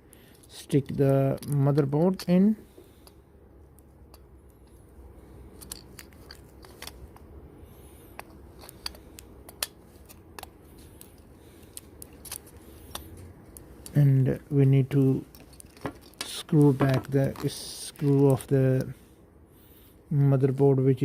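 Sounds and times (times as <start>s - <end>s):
phone parts and tools clicking: 0.0s - 7.4s, 8.0s - 14.1s, 15.0s - 18.9s.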